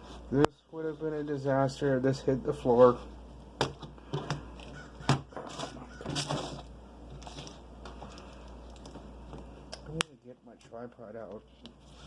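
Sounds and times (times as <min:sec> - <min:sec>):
plastic rustling and rattling: 0:04.2 - 0:09.0.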